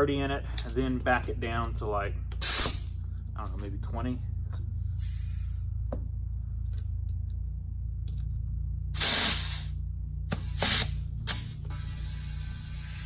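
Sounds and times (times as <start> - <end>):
steady low hum: 0.0 - 13.0
compressed air hissing: 2.4 - 3.0, 5.0 - 5.7, 9.0 - 13.0.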